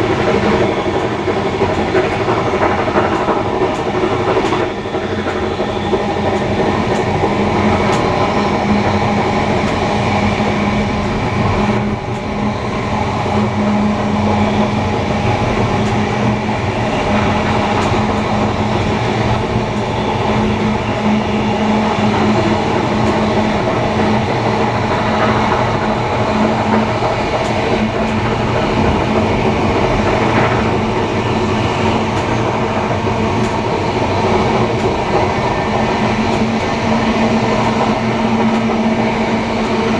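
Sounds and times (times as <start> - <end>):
wheel-on-rail rumble and rattle: 0.0 - 39.9.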